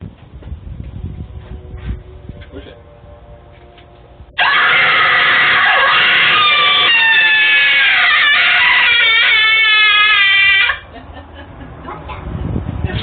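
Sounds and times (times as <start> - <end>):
doorbell shrieking scream: 4.4 - 10.8.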